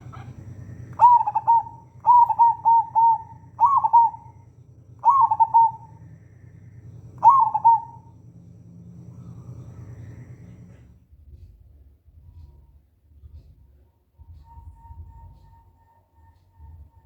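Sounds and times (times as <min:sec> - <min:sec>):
dove cooing: 0:00.0 - 0:10.8.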